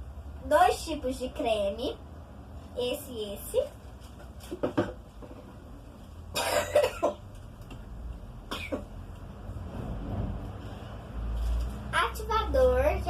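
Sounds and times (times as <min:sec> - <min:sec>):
person coughing: 0:06.3 - 0:07.2, 0:08.5 - 0:08.9.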